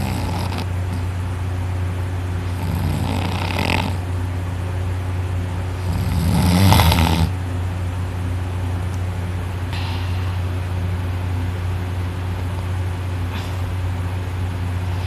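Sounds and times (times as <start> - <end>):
person snoring heavily: 0.0 - 1.1, 2.4 - 4.0, 5.8 - 7.4
steady low hum: 0.0 - 15.0.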